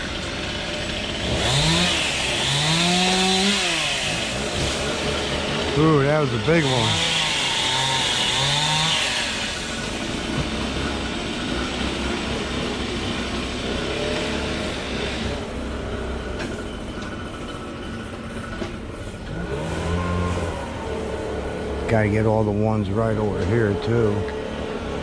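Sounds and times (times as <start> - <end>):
heavy machinery engine rumble: 0.0 - 25.0.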